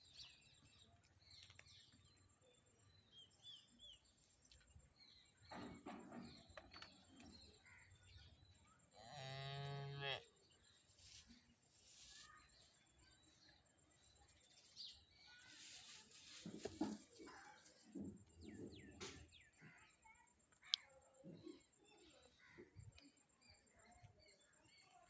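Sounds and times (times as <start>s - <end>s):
faint bird chirps: 9.6s - 25.0s.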